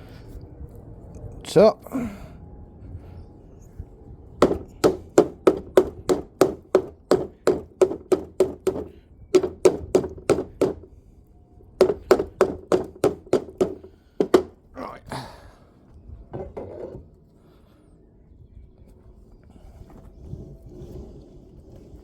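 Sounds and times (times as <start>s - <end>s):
hammer knocks with metallic ring: 4.4s - 10.9s, 11.8s - 14.6s.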